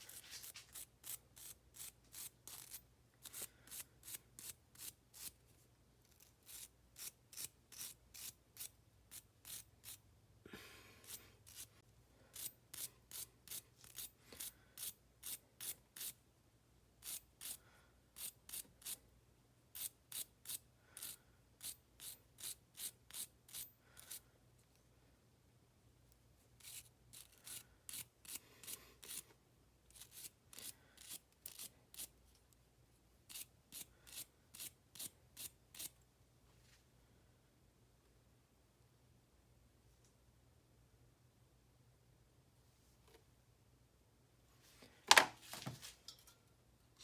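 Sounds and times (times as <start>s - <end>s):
hand scraping strokes: 0.0s - 1.2s.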